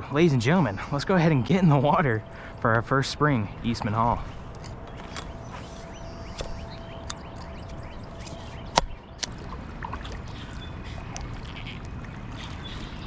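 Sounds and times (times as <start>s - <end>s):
river water noise: 0.0s - 13.0s
paddle splashes and clicks: 6.3s - 13.0s.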